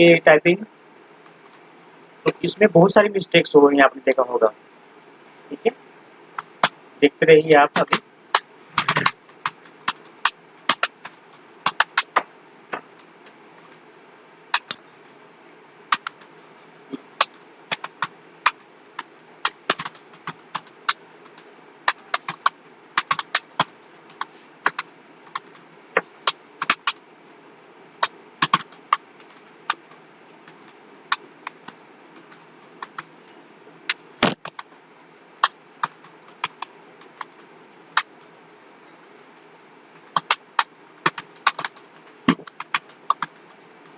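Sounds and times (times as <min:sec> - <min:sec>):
faint hiss: 0:00.0 - 0:43.9
computer keyboard typing: 0:07.7 - 0:08.0, 0:08.7 - 0:12.8, 0:14.6 - 0:14.8, 0:17.2 - 0:21.0, 0:21.9 - 0:27.0, 0:28.0 - 0:29.9, 0:31.1 - 0:33.1, 0:35.4 - 0:37.3, 0:40.1 - 0:43.4.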